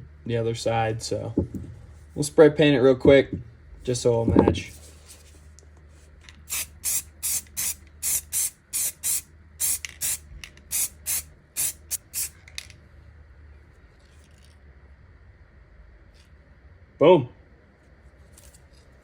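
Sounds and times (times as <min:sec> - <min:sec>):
spray paint can spraying: 0:06.4 - 0:12.4.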